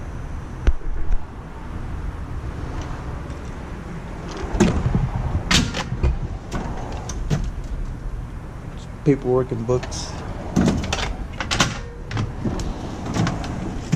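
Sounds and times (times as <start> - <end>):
tool box drawer sliding: 9.8 - 13.9.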